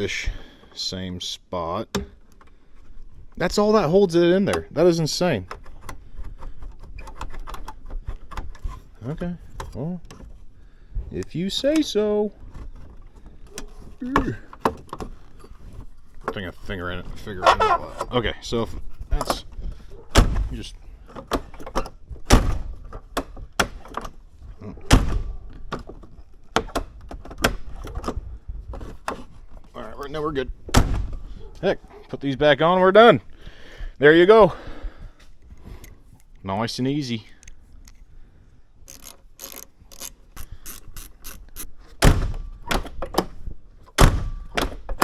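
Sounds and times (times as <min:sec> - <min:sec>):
car door thunking shut: 0:20.1 - 0:20.5, 0:22.2 - 0:22.7, 0:24.9 - 0:25.4, 0:30.7 - 0:31.3, 0:42.0 - 0:42.5, 0:44.0 - 0:45.0.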